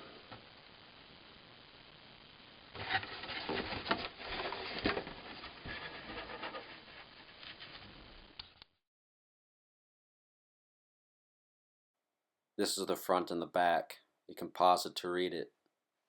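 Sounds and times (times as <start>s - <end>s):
cardboard box scraping and tapping: 2.8s - 6.8s.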